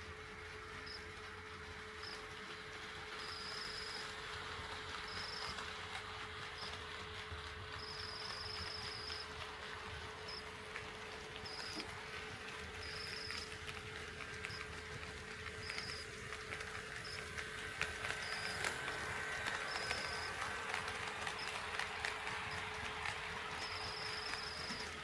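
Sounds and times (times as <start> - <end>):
model train motor whine: 3.2 - 9.3, 16.6 - 25.0.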